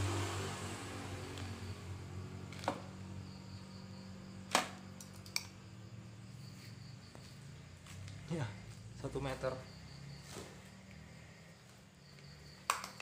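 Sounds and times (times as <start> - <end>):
sharp clicks of metal parts: 5.0 - 5.6.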